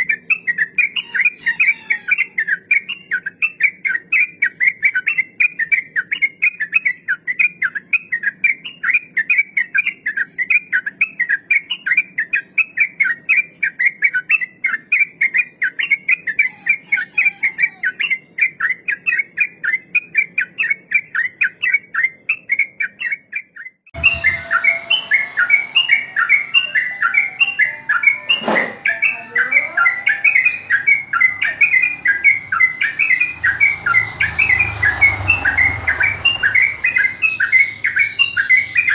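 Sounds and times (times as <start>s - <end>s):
bulbul singing rapid chattering notes: 15.4s - 38.9s.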